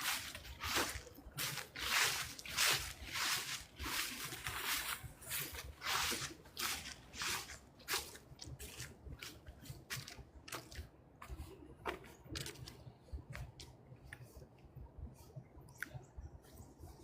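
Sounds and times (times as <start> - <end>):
footsteps crunching dry leaves: 0.0 - 11.6.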